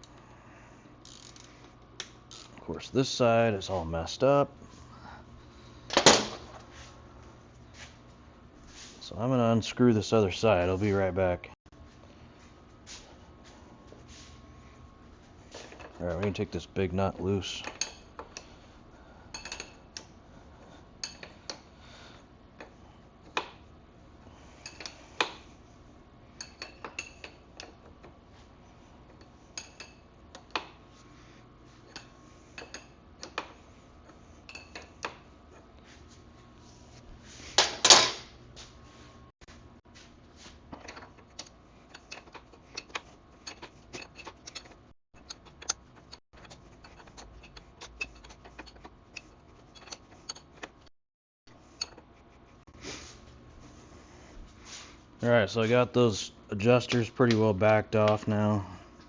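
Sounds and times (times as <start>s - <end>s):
hand tools and metal parts clinking: 15.5s - 18.5s, 19.3s - 20.1s, 31.8s - 35.7s, 40.7s - 50.9s.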